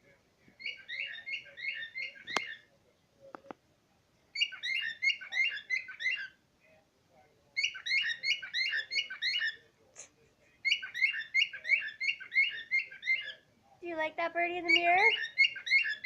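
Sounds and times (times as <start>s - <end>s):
pet bird rapid chirps: 0.6s - 2.7s, 4.4s - 6.4s, 7.6s - 9.6s, 10.6s - 13.4s, 14.0s - 16.0s.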